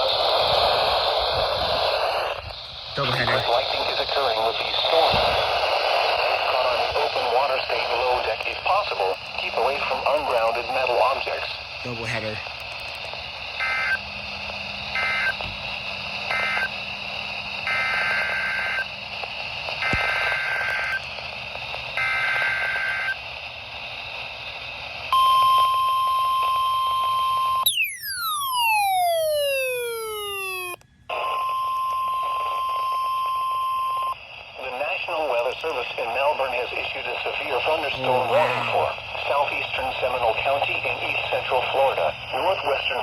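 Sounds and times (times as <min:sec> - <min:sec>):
steady alarm tone: 0:25.2 - 0:34.2
falling siren-like sweep: 0:27.7 - 0:31.2.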